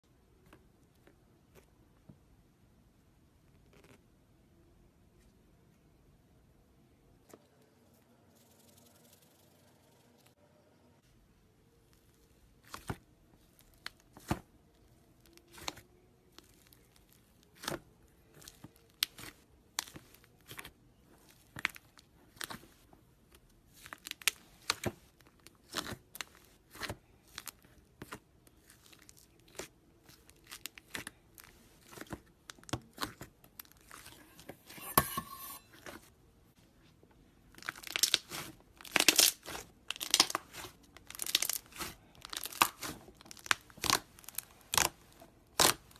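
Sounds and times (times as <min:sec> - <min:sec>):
slime crackling: 0:37.5 - 0:45.9.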